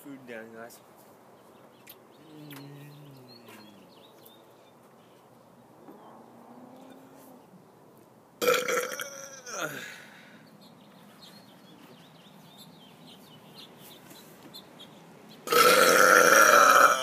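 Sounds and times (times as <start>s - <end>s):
man burping: 8.4s - 10.1s, 15.5s - 17.0s.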